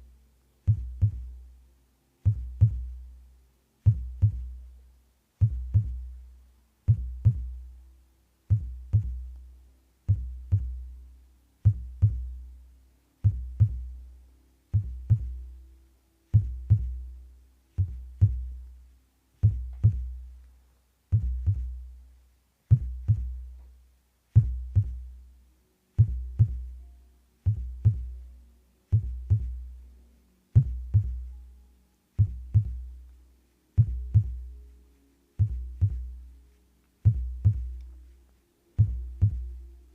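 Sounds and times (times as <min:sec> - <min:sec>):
heartbeat thumps: 0:00.6 - 0:01.4, 0:02.2 - 0:03.1, 0:03.8 - 0:04.7, 0:05.4 - 0:06.2, 0:06.9 - 0:07.7, 0:08.5 - 0:09.4, 0:10.1 - 0:11.0, 0:11.6 - 0:12.5, 0:13.2 - 0:14.0, 0:14.7 - 0:15.6, 0:16.3 - 0:17.2, 0:17.8 - 0:18.7, 0:19.4 - 0:20.4, 0:21.1 - 0:22.0, 0:22.7 - 0:23.6, 0:24.3 - 0:25.2, 0:26.0 - 0:26.8, 0:27.4 - 0:28.3, 0:28.9 - 0:29.8, 0:30.6 - 0:31.4, 0:32.2 - 0:33.2, 0:33.8 - 0:34.7, 0:35.4 - 0:36.3, 0:37.0 - 0:38.0, 0:38.8 - 0:39.7.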